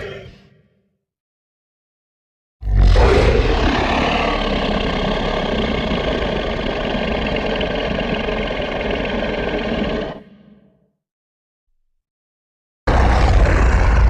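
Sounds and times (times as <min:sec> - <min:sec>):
loud deep rumbling: 0:02.8 - 0:10.3, 0:12.9 - 0:14.0.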